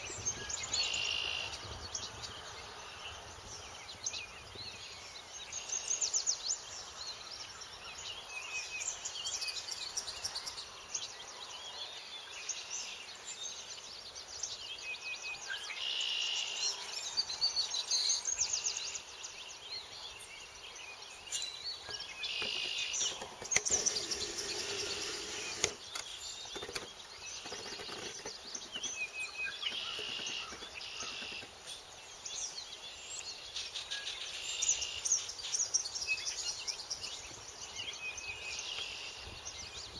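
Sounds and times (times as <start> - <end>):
birds singing: 17.1 - 39.9.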